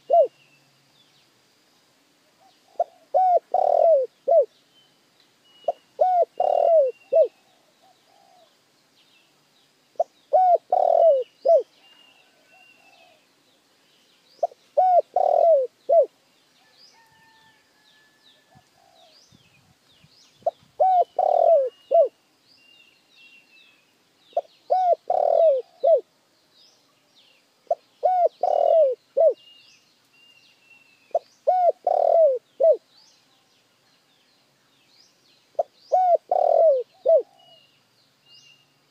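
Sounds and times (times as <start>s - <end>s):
dove cooing: 0.0s - 0.4s, 2.4s - 4.5s, 5.7s - 8.5s, 10.0s - 13.2s, 14.4s - 16.1s, 20.4s - 22.2s, 24.4s - 26.1s, 27.7s - 29.4s, 31.1s - 32.8s, 35.6s - 37.6s
small birds chirping faintly: 0.0s - 38.9s.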